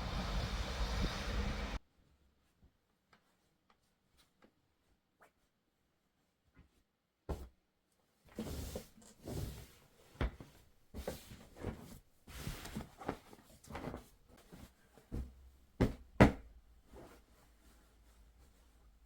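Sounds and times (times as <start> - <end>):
objects rustling and shuffling: 6.5 - 19.0.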